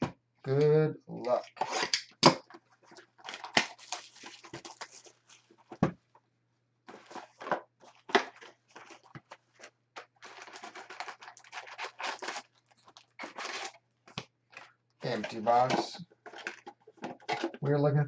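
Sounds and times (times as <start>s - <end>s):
plastic wrap crinkling and tearing: 1.2s - 5.8s, 6.9s - 17.6s
cardboard box rustling: 2.9s - 6.1s, 6.9s - 13.8s, 14.5s - 17.6s.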